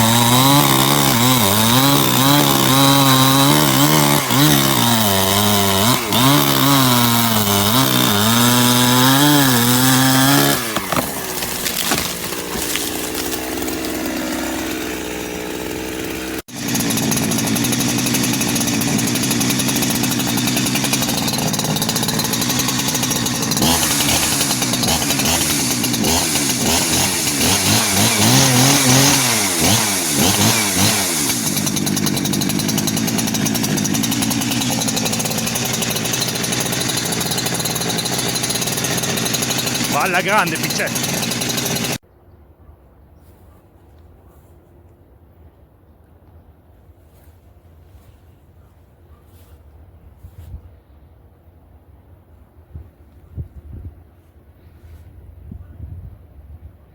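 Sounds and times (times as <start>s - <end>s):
chainsaw running under load: 0.0s - 42.0s.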